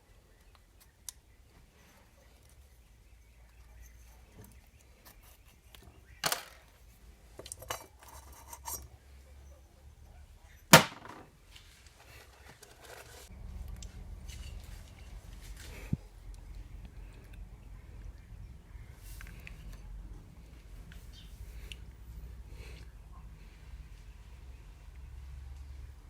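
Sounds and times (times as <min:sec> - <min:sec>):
metal tools clinking on workbench: 0:07.4 - 0:08.9.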